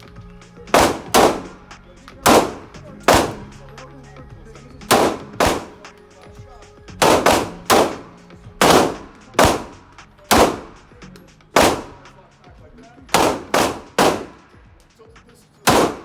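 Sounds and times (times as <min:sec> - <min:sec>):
pistol shots: 0:00.7 - 0:03.6, 0:04.9 - 0:06.1, 0:07.0 - 0:11.0, 0:11.6 - 0:12.2, 0:13.1 - 0:14.6, 0:15.7 - 0:16.0.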